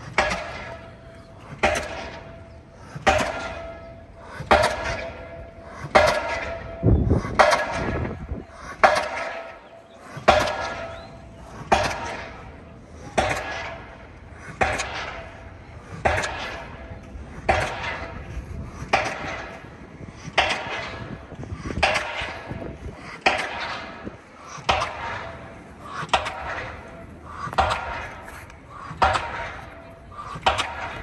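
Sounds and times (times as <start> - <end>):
pile-driving hammer clanging: 0.0 - 31.0.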